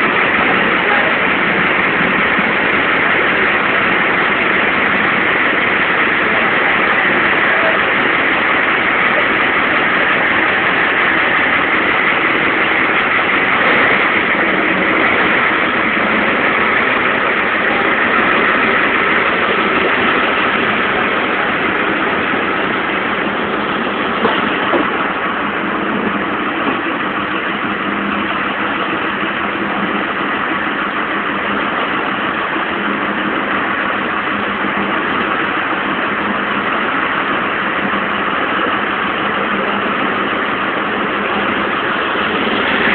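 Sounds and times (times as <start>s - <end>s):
boat engine running: 0.0s - 42.9s.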